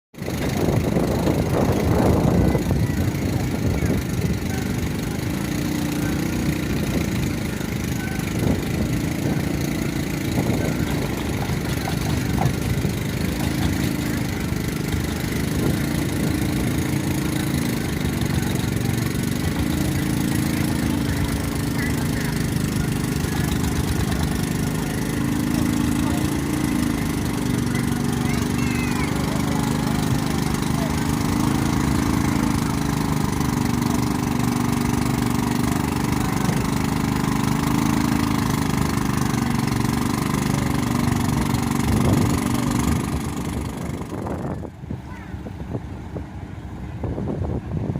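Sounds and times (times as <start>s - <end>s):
boat engine running: 0.1s - 47.9s
wind noise: 0.3s - 4.4s, 41.8s - 47.9s.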